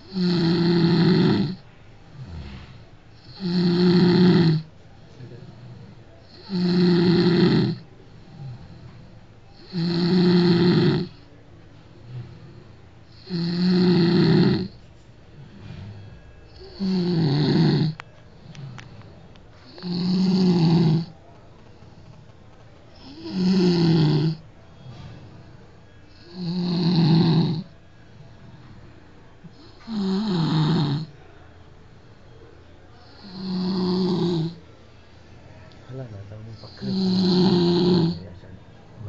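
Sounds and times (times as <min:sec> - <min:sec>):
person snoring loudly: 0:00.0 - 0:01.6, 0:02.2 - 0:04.7, 0:06.2 - 0:08.9, 0:09.5 - 0:11.2, 0:13.0 - 0:14.8, 0:15.4 - 0:19.0, 0:19.6 - 0:21.1, 0:23.0 - 0:24.4, 0:26.1 - 0:27.7, 0:29.5 - 0:31.2, 0:33.0 - 0:34.6, 0:36.6 - 0:38.2
quiet breathing: 0:00.0 - 0:39.0.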